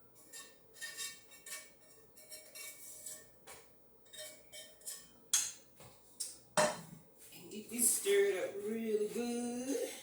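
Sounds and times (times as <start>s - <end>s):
metal spoon scraping a pot: 0.0s - 5.6s.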